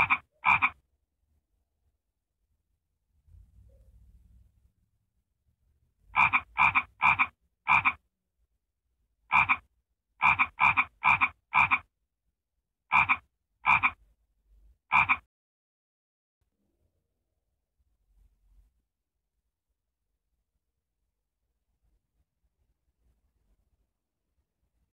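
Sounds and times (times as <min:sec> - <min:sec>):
frog croaking: 0:00.0 - 0:00.8, 0:06.1 - 0:08.0, 0:09.3 - 0:11.9, 0:12.9 - 0:14.0, 0:14.9 - 0:15.3.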